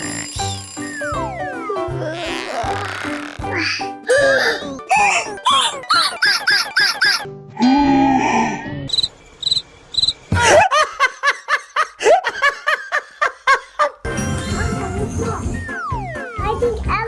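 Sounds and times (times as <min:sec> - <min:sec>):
high-pitched laughing: 0:02.2 - 0:07.3.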